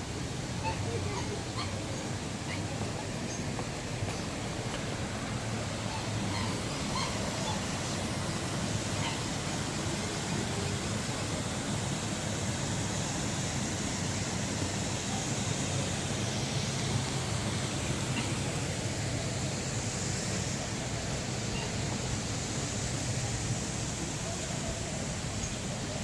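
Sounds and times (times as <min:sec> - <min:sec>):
fountain water splashing: 0:00.0 - 0:26.0.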